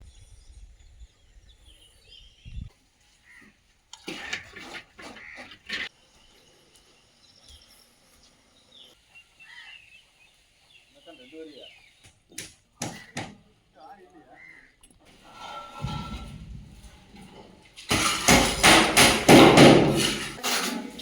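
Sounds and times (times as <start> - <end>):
birds chirping: 5.2 - 16.3.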